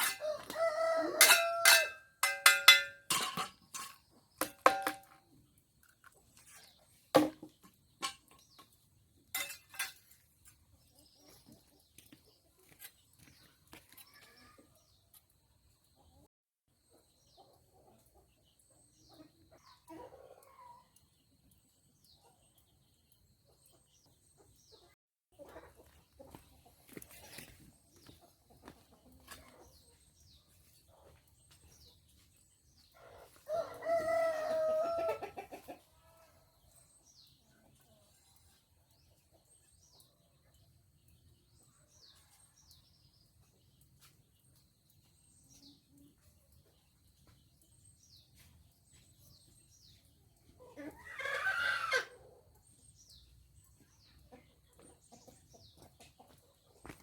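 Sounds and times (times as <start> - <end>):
rooster crowing: 0.2 - 2.0, 33.5 - 35.2
small birds chirping: 5.3 - 57.0.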